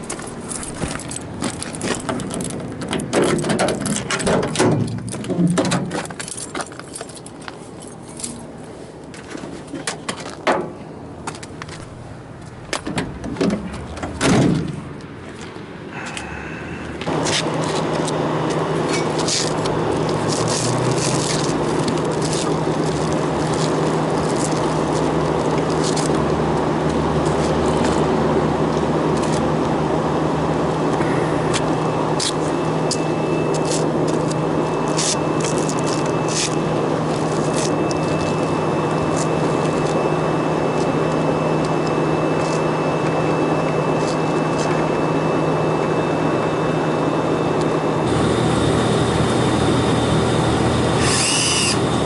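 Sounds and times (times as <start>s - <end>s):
gear clanking and scraping: 0.0s - 16.2s, 17.0s - 29.8s
machine humming: 15.9s - 52.0s.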